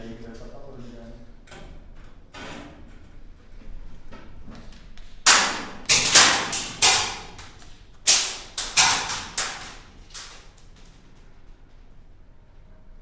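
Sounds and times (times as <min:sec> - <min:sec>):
airsoft gun single shots: 0:05.3 - 0:07.5, 0:08.1 - 0:09.8.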